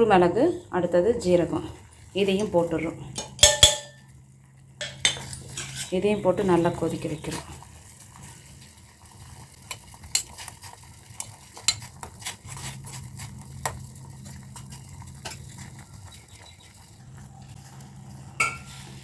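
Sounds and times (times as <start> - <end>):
low steady hum: 0.0 - 8.8
metal spoon clinking against pot: 3.2 - 4.1, 4.8 - 6.0.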